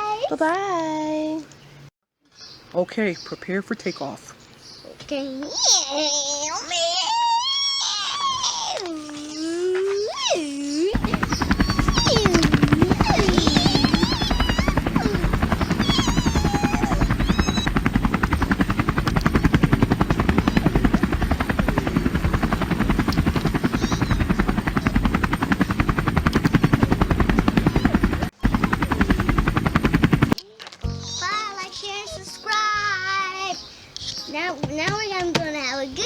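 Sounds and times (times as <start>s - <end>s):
helicopter rotor chopping: 10.4s - 36.0s.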